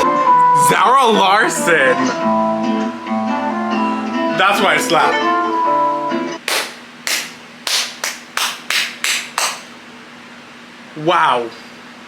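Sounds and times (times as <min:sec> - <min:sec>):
guitar-backed pop song: 0:00.0 - 0:05.5
hand claps: 0:06.4 - 0:09.8.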